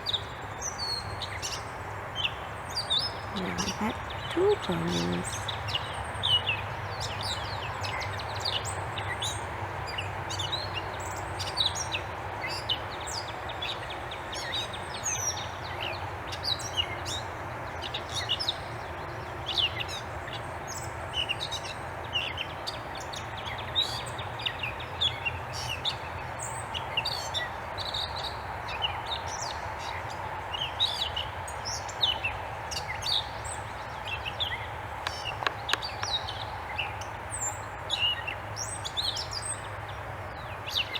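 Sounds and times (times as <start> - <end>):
birds chirping: 3.3 - 5.4, 35.0 - 36.4.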